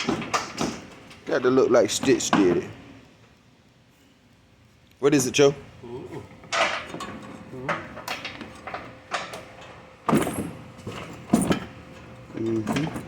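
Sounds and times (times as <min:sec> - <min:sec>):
metal car parts clanking and rattling: 0:00.0 - 0:02.7, 0:06.3 - 0:13.0.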